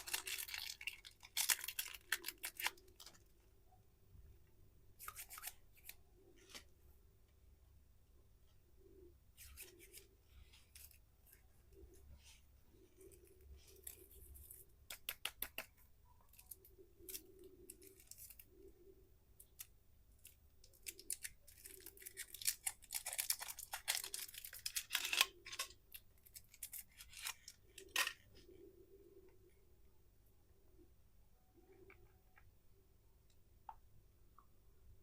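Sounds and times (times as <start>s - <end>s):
plastic candy wrappers crinkling: 0.0s - 3.3s, 19.4s - 28.2s.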